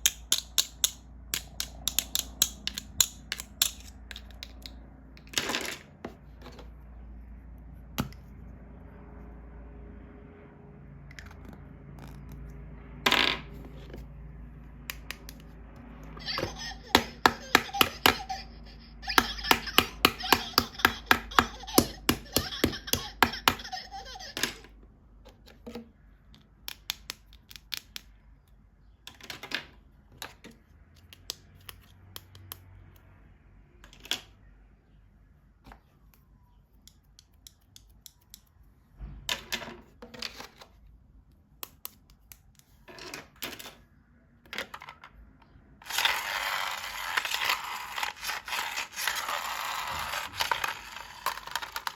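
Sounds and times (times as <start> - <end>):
plastic toy taps: 0.0 - 4.7, 19.0 - 23.7.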